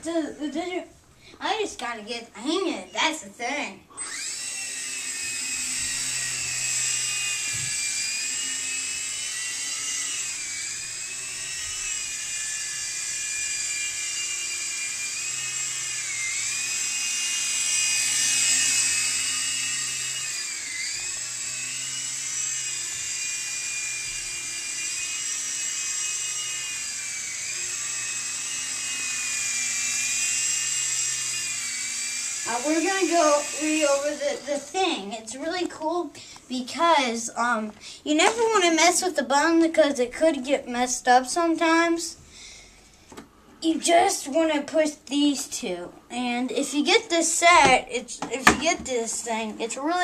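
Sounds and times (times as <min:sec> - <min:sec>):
rc helicopter motor whine: 0:03.9 - 0:36.4.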